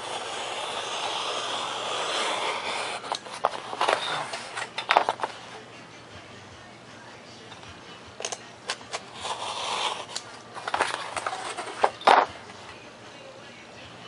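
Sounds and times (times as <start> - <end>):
blade cutting foam board: 0.0 - 5.3, 8.8 - 12.3.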